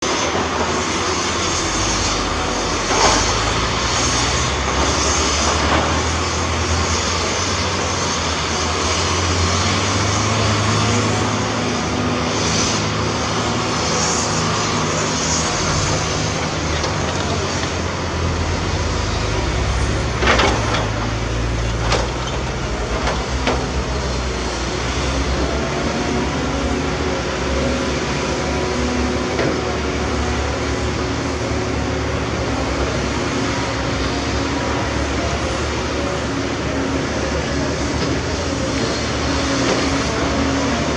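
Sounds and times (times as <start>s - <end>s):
heavy diesel engines running: 0.0s - 40.9s
loud clatter: 13.8s - 24.2s.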